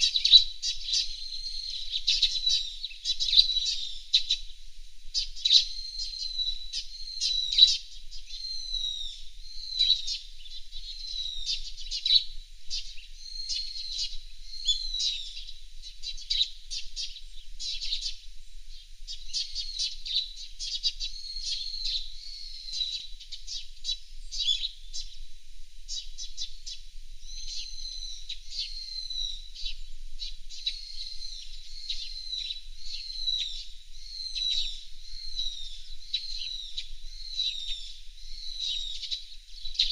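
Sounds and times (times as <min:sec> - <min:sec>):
birds chirping: 0:05.2 - 0:25.2, 0:25.9 - 0:39.9.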